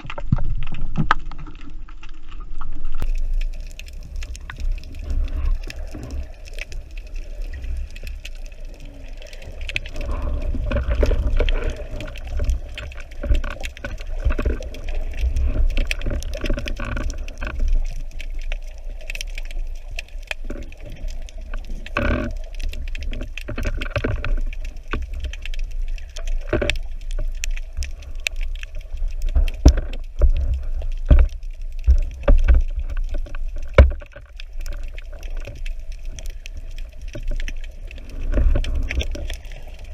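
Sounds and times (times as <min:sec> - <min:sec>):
underwater rumble of water: 0:00.0 - 0:39.9
water gurgling: 0:00.0 - 0:39.9.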